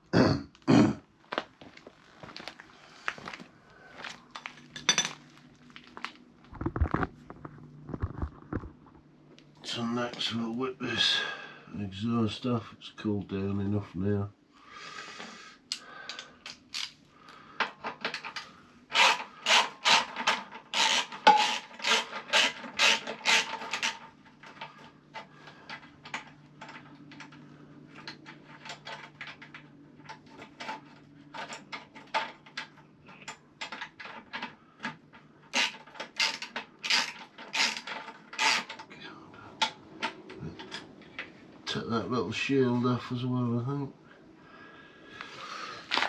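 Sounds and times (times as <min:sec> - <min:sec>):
hand ratchet rasping: 0:18.3 - 0:24.7, 0:35.5 - 0:38.8.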